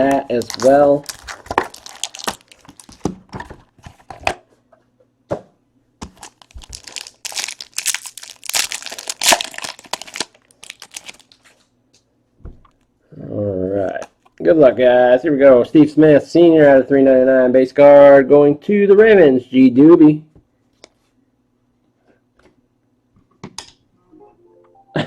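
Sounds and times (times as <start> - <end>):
plastic wrapping crinkling: 0.0 - 3.2, 6.0 - 11.7.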